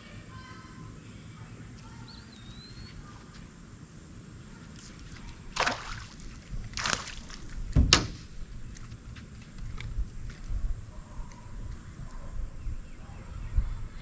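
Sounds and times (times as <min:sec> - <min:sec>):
water splashing: 0:04.8 - 0:08.5.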